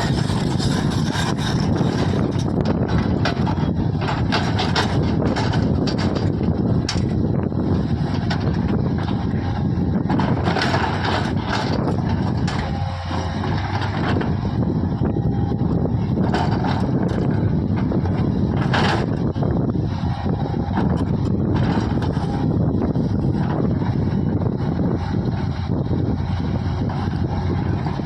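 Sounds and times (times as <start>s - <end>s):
diesel engine running: 0.0s - 28.0s
machinery clanks and knocks: 0.0s - 28.0s.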